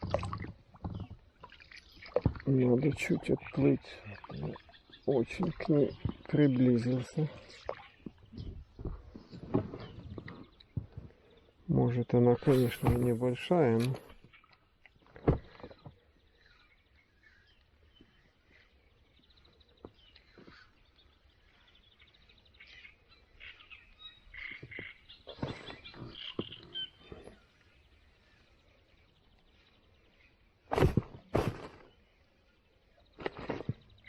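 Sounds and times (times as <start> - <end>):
faint bird chirps: 0.0 - 34.0
sharp knock: 12.5 - 13.2.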